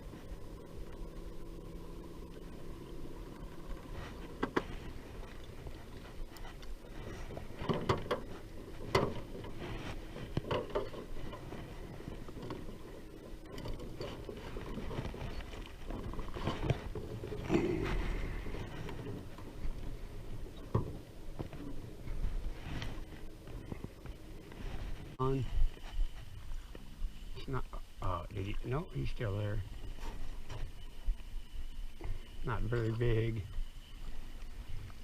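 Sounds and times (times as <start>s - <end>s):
low steady boat hum: 0.0s - 35.0s
knocks and clunks on boat: 0.2s - 25.2s.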